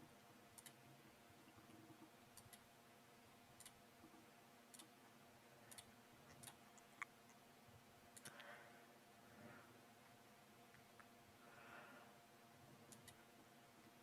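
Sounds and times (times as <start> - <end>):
faint computer mouse clicks: 8.2 - 8.5, 12.9 - 13.2.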